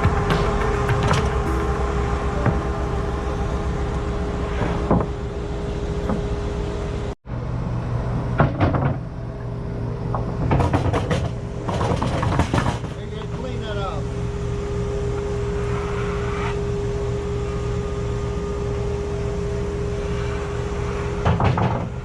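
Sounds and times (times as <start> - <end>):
knocks and clatters: 0.0 - 2.6, 8.4 - 9.0, 10.1 - 13.5, 21.2 - 22.0
deeper engine note: 0.0 - 8.4, 13.2 - 21.2
machinery engine running: 0.0 - 8.4.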